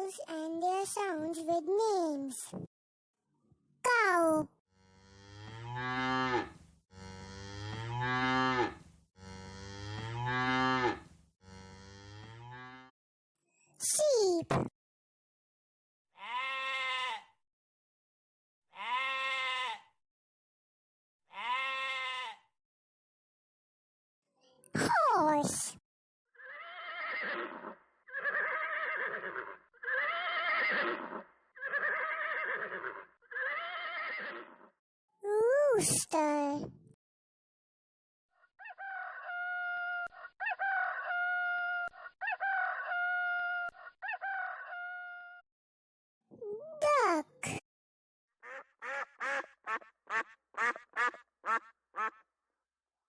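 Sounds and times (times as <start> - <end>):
cow mooing: 4.8 - 12.9
horse whinnying: 26.4 - 34.6.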